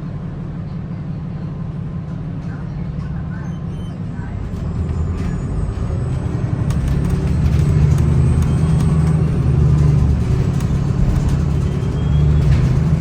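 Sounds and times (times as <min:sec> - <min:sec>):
bus diesel engine drone: 0:00.0 - 0:13.0
faint light rattles: 0:04.3 - 0:13.0.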